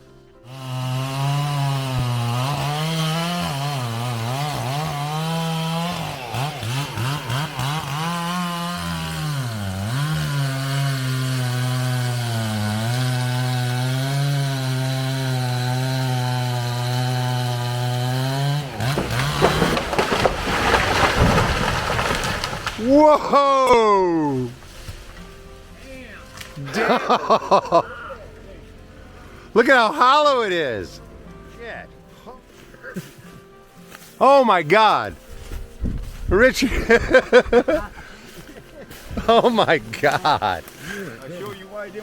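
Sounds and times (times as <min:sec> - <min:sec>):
chainsaw cutting tree trunk: 0:00.0 - 0:27.8, 0:36.8 - 0:42.0
tree crashing down: 0:01.9 - 0:27.8, 0:35.2 - 0:38.2, 0:38.9 - 0:41.6.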